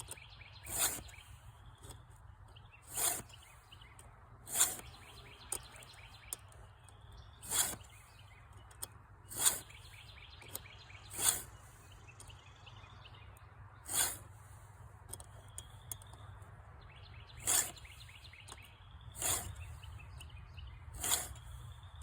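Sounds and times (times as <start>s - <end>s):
file rasping on saw chain: 0.6s - 1.3s, 2.8s - 3.5s, 4.5s - 5.9s, 7.4s - 8.0s, 9.3s - 10.0s, 11.1s - 11.6s, 13.8s - 14.3s, 17.4s - 18.1s, 19.1s - 19.8s, 21.0s - 21.6s
small clicks: 1.8s - 9.6s, 15.0s - 16.5s.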